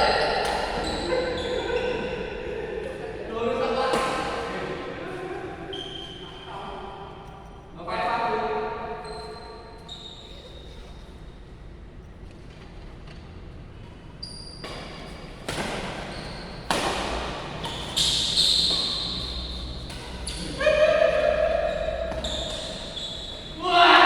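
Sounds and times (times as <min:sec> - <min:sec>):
shoe squeaks: 0:00.0 - 0:02.4, 0:05.6 - 0:07.7, 0:08.8 - 0:11.5, 0:14.1 - 0:24.0
racket striking shuttlecock: 0:14.7 - 0:23.0.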